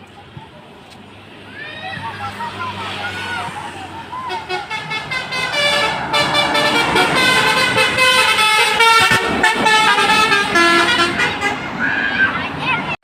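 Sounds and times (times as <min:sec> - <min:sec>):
passing bus noise: 0:00.0 - 0:13.0
musical bus horn tune: 0:04.2 - 0:11.7.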